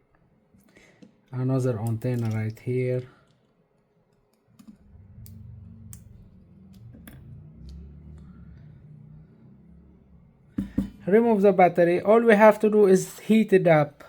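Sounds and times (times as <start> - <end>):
small tools clicking and tapping: 1.8 - 3.5
faint low rumble: 4.6 - 11.4.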